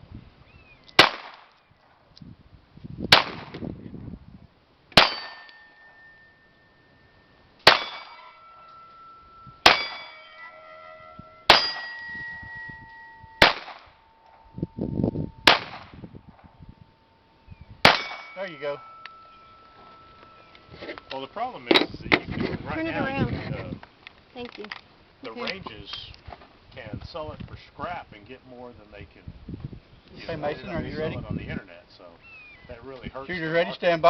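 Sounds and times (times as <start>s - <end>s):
gunshots: 1.0s - 1.5s, 3.1s - 3.6s, 7.6s - 8.2s, 13.4s - 13.9s, 15.4s - 16.0s, 17.8s - 18.4s
steel plate ringing: 4.9s - 22.1s.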